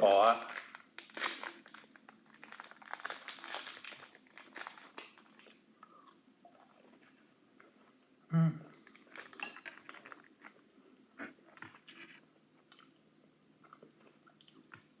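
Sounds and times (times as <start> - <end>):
crunchy bar crunching and chewing: 0.4 - 5.6.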